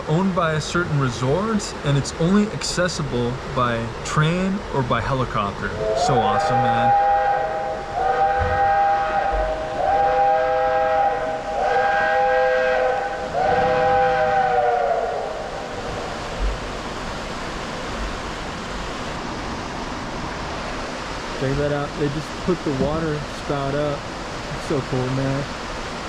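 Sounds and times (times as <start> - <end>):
steady steam hiss: 0.0 - 26.0
steam locomotive chime whistle: 5.8 - 15.4.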